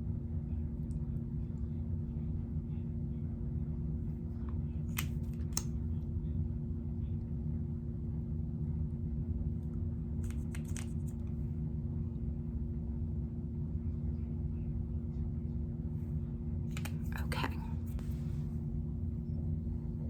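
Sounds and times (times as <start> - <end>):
low room hum: 0.0 - 20.0
light clicks and taps: 16.7 - 18.2.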